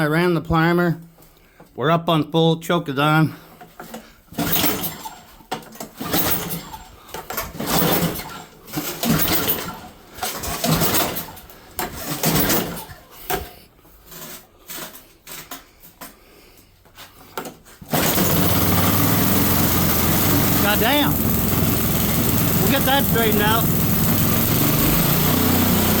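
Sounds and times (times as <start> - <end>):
recoil starter pulls: 4.4 - 12.9, 17.8 - 26.0
snowblower engine running: 17.9 - 26.0.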